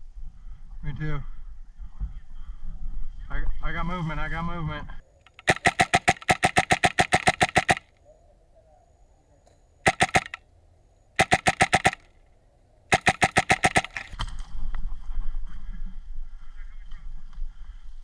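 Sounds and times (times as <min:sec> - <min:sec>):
airsoft rifle firing bursts: 0:05.3 - 0:07.9, 0:09.9 - 0:10.4, 0:11.2 - 0:12.1, 0:12.9 - 0:14.2.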